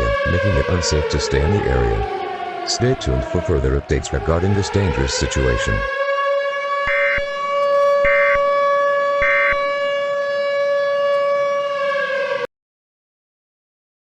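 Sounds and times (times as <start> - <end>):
buzzy alarm tone: 6.7 - 11.8.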